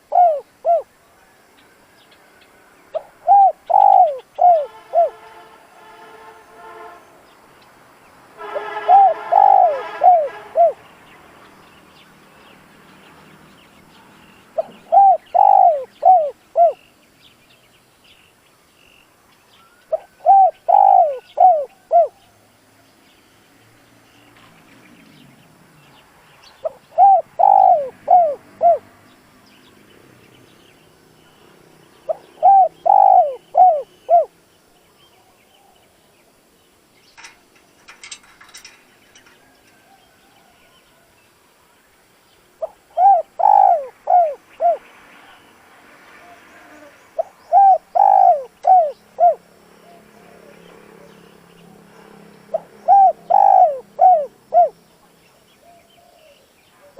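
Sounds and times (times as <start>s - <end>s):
dove cooing: 0.0s - 0.9s, 2.9s - 5.2s, 8.5s - 10.8s, 14.6s - 16.8s, 19.9s - 22.2s, 26.6s - 28.9s, 32.1s - 34.4s, 37.2s - 40.0s, 42.6s - 44.8s, 46.2s - 51.8s, 52.5s - 54.8s.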